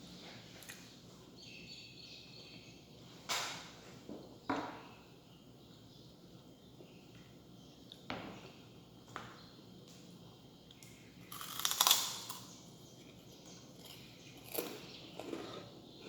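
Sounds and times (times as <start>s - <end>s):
crunching of eating: 10.7s - 16.0s.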